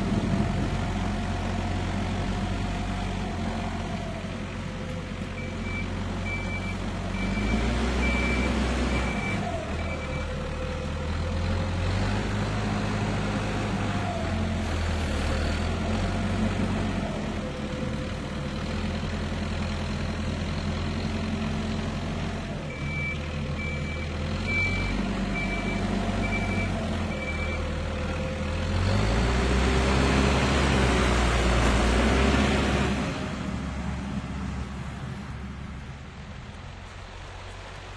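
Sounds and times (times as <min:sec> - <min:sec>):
tractor engine working: 0:00.0 - 0:37.9
reversing alarm beeping: 0:05.4 - 0:10.3, 0:22.7 - 0:27.7.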